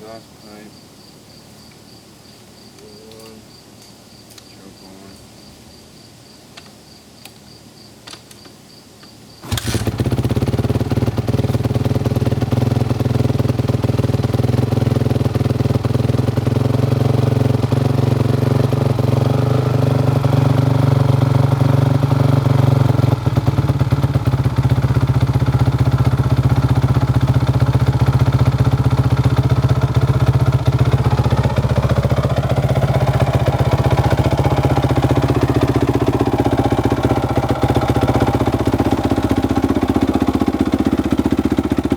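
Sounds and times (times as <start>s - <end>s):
motorcycle engine starting and idling: 9.4s - 41.9s.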